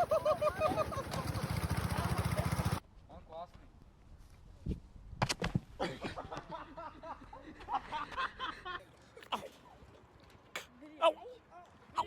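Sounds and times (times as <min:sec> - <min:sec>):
person giggling: 0:00.0 - 0:01.5, 0:05.8 - 0:09.7.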